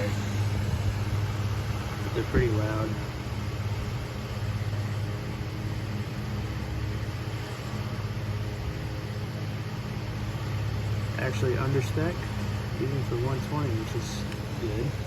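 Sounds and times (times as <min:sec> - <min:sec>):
table fan running: 0:00.0 - 0:15.0.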